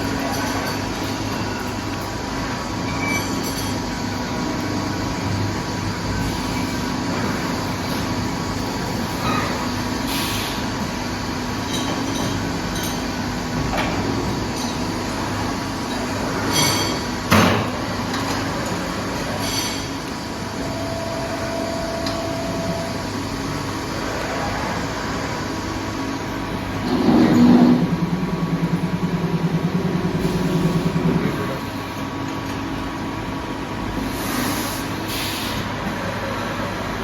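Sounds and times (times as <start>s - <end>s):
machine humming: 17.1s - 32.3s.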